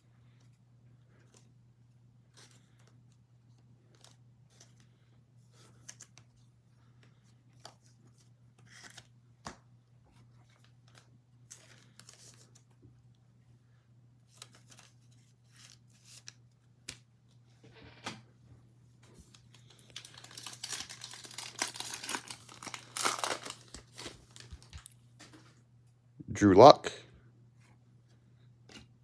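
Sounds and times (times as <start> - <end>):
card pack crinkling and tearing: 19.3 - 25.0.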